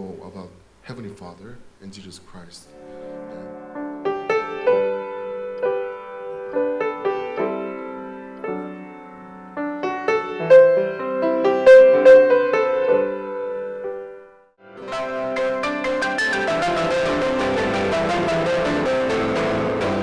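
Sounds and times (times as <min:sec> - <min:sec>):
slow solo piano piece: 0:02.7 - 0:14.5.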